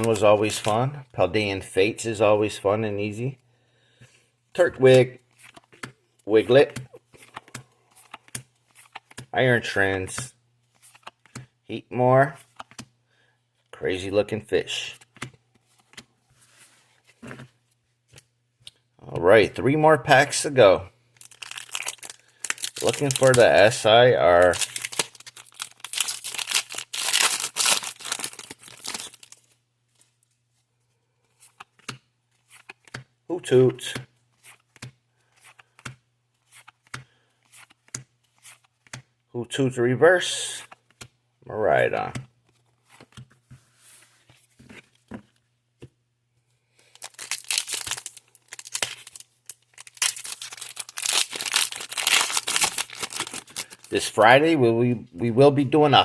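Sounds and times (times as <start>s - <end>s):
cards being handled: 6.6s - 9.3s, 21.2s - 30.1s, 33.9s - 39.0s, 42.0s - 45.9s, 46.8s - 54.1s
foil wrapper tearing and crinkling: 21.2s - 23.8s, 24.4s - 29.4s, 46.8s - 53.9s.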